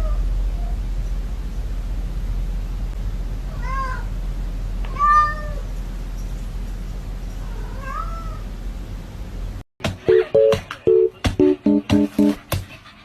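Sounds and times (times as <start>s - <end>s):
cat meowing: 3.5s - 4.1s, 4.9s - 5.6s, 7.4s - 8.5s.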